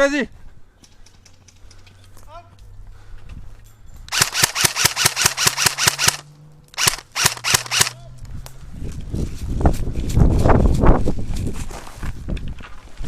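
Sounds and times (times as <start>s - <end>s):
airsoft gun automatic bursts: 4.1s - 8.0s
rustling rumble: 8.0s - 13.0s.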